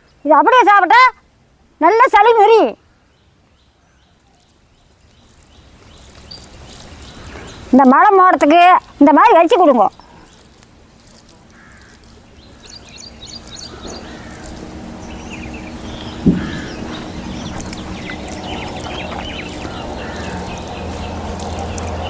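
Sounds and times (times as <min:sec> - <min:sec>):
birds chirping: 0:01.8 - 0:22.0
steady low hum: 0:09.9 - 0:22.0
single knock: 0:16.2 - 0:16.6.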